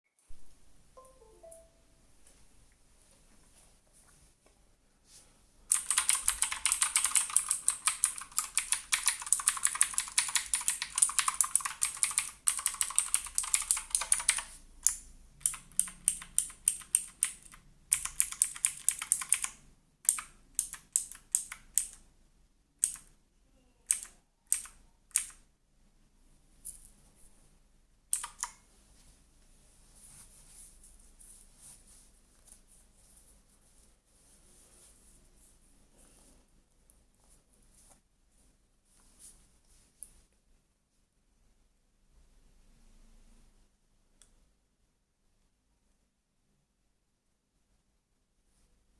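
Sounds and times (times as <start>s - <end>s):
mechanical keyboard typing: 5.7s - 22.0s, 22.8s - 23.2s, 23.9s - 25.4s, 28.1s - 28.6s.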